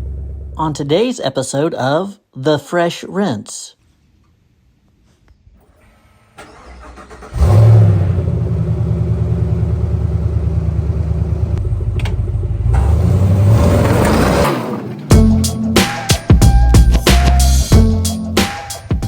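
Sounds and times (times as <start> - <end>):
engine cranking: 6.4 - 8.4
engine running steadily: 7.4 - 13.2.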